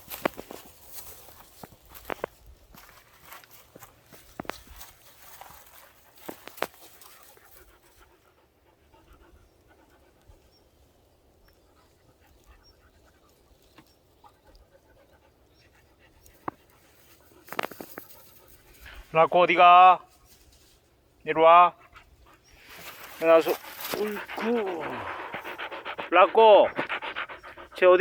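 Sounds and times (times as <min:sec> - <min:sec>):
dog panting: 0:04.8 - 0:10.6, 0:11.7 - 0:18.9, 0:21.8 - 0:28.0.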